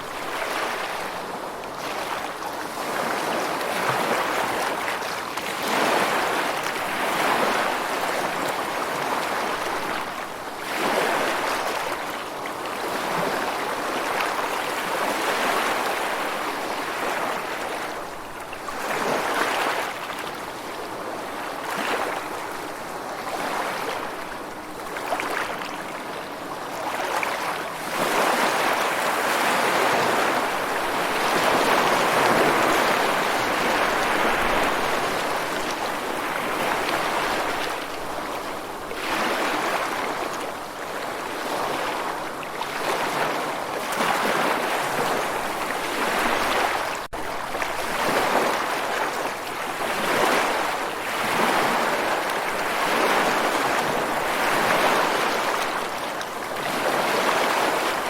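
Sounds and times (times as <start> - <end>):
rushing water: 0.0 - 58.0.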